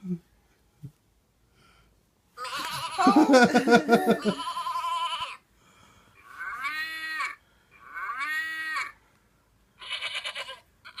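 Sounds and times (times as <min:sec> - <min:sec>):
goat bleat: 0:02.4 - 0:03.1, 0:04.2 - 0:05.4, 0:06.4 - 0:09.0, 0:09.8 - 0:11.0
toy cow mooing: 0:06.2 - 0:09.0, 0:09.8 - 0:11.0.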